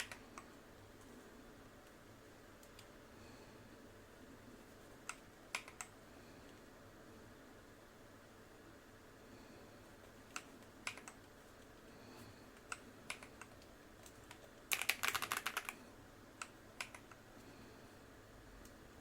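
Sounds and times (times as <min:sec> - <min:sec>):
mechanical keyboard keystrokes: 0:05.1 - 0:05.9, 0:10.3 - 0:11.2, 0:12.7 - 0:15.8, 0:16.8 - 0:17.2.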